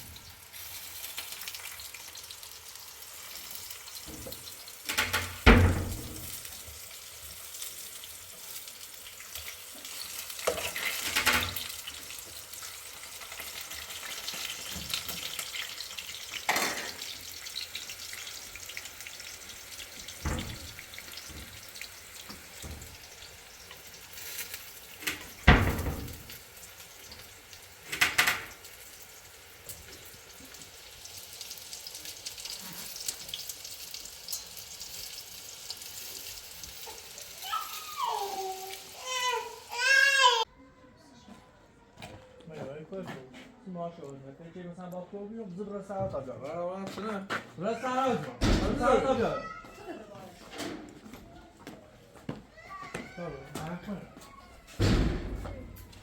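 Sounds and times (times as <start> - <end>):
sizzling hiss: 0.0 - 39.8
kitchen clatters: 3.9 - 6.8, 9.4 - 12.2, 13.2 - 18.8, 19.8 - 28.8, 48.4 - 49.5, 54.6 - 56.0.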